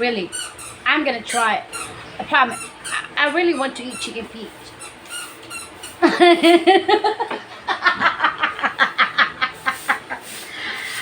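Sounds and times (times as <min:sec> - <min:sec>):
woman laughing: 0:06.0 - 0:10.4.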